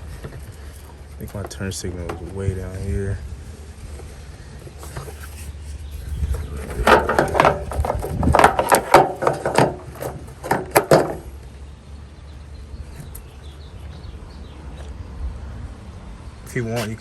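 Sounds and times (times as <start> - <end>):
plastic parts clicking and knocking: 6.6 - 11.3.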